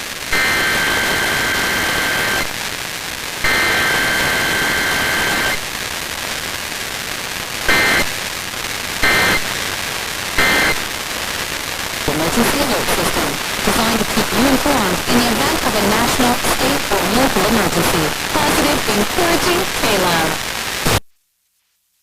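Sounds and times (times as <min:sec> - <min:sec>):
radio static: 0:00.0 - 0:21.0
digital data bursts: 0:07.7 - 0:08.2, 0:09.0 - 0:09.7, 0:10.4 - 0:10.9, 0:12.1 - 0:21.0.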